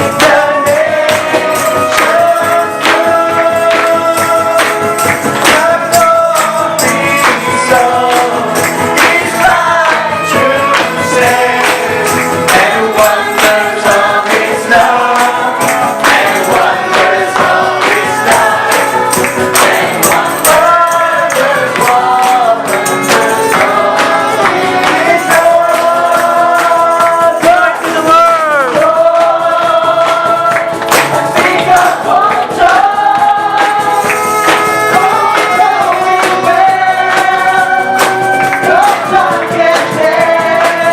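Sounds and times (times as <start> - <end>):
church choir singing: 0.0 - 40.9
tambourine: 0.0 - 40.9.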